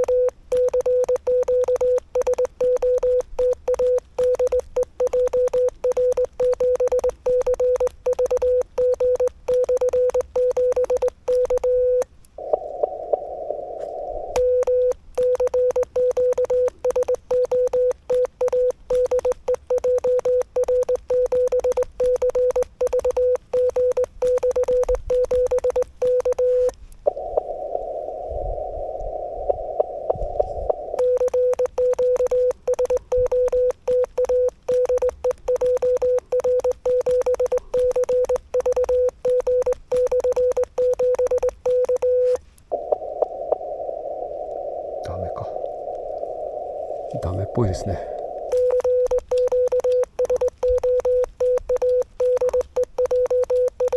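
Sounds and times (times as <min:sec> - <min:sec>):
morse code tone: 0:00.0 - 0:12.1, 0:14.4 - 0:26.7, 0:31.0 - 0:42.4, 0:48.5 - 0:53.9
radio band hiss: 0:42.7 - 0:48.7.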